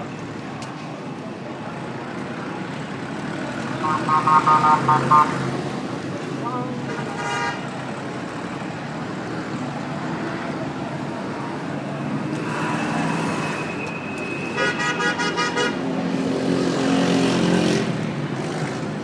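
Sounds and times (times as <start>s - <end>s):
city street traffic: 0.0s - 19.0s
car horn beeping: 3.8s - 5.4s, 6.5s - 7.7s, 14.4s - 15.8s.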